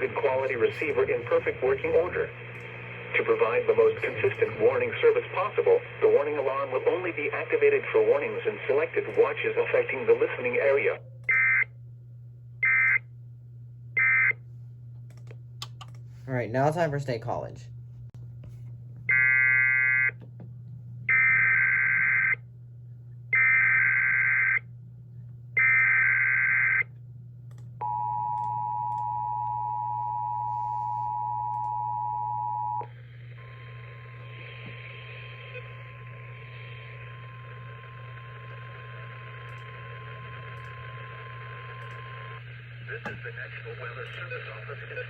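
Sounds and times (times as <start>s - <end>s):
radio static: 0.0s - 11.6s, 32.4s - 45.0s.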